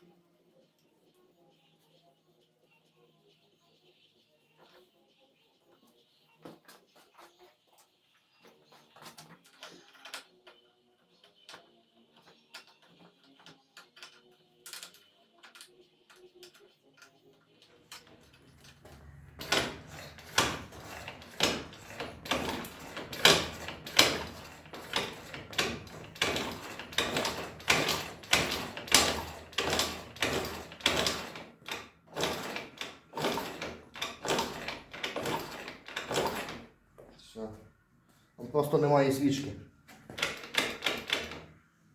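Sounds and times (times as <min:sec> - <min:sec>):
scooter engine kick starting: 0:18.1 - 0:36.7.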